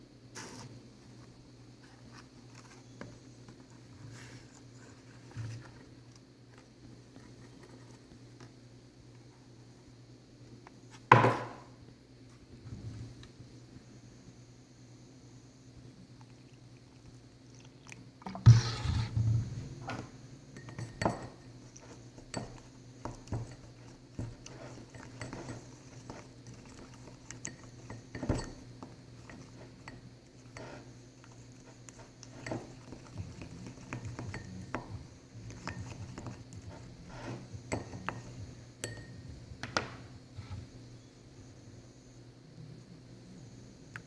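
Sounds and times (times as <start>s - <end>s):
steady low hum: 11.6s - 44.0s.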